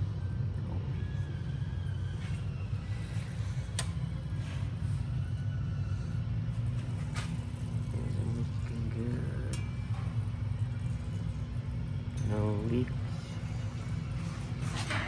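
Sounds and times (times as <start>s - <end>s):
low rumble of repair shop: 0.0s - 15.0s.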